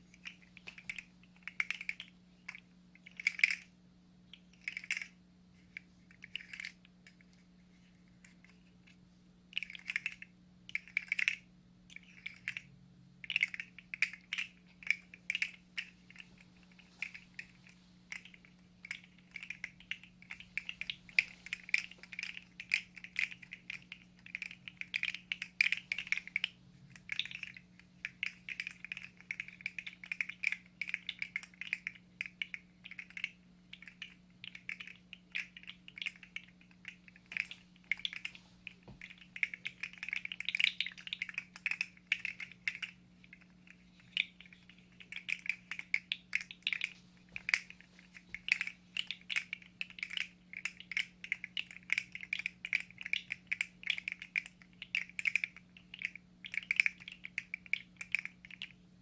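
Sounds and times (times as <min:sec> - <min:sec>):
faint steady hum: 0:00.0 - 0:59.0
plastic segments clicking and rattling: 0:39.0 - 0:58.8.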